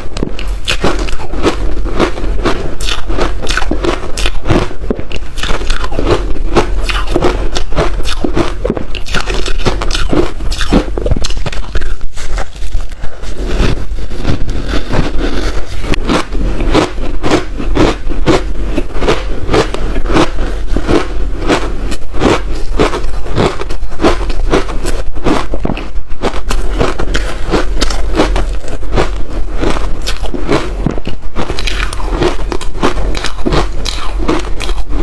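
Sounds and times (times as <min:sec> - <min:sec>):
crunching ice chunks: 0:27.2 - 0:34.8.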